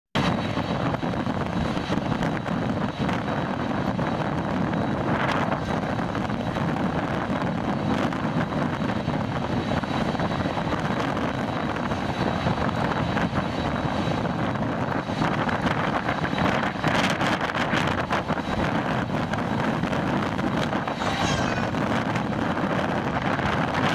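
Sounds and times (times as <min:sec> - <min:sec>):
jet engines roaring at takeoff: 0:00.2 - 0:23.9
wind buffeting microphone: 0:00.2 - 0:23.9.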